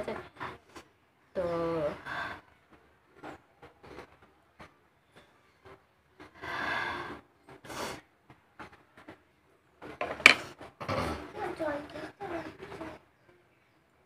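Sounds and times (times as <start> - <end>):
woman sniffing and snorting: 6.4 - 8.0.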